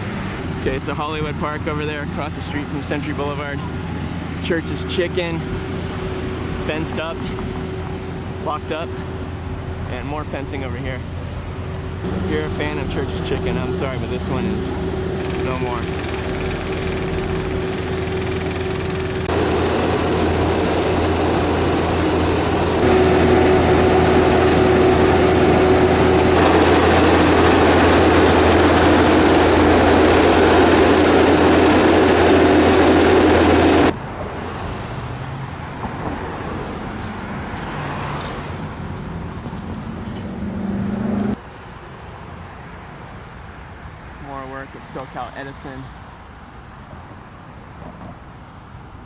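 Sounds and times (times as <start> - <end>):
low hum: 0.0 - 34.1
engine and traffic noise: 0.0 - 49.0
street noise: 0.0 - 49.0.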